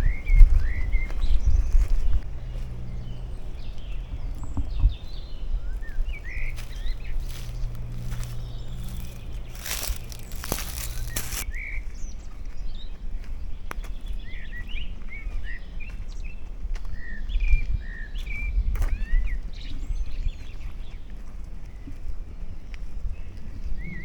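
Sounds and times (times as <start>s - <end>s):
low steady rumble: 0.0s - 11.4s
songbirds chirping: 0.0s - 11.4s.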